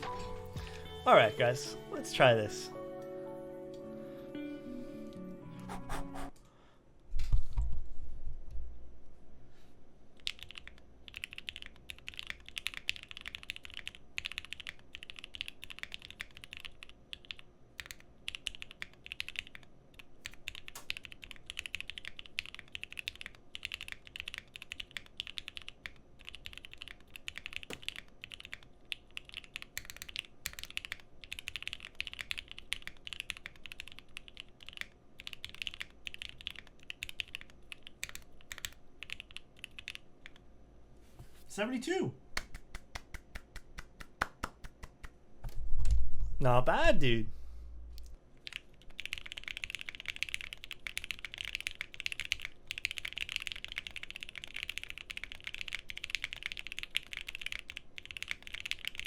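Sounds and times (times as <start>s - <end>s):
mechanical keyboard typing: 10.2s - 40.4s, 48.4s - 59.0s.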